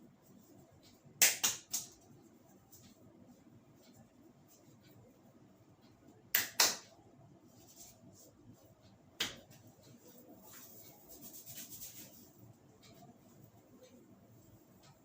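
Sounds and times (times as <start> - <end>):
hands slapping head: 1.2 - 2.0, 6.4 - 6.9, 9.2 - 9.4.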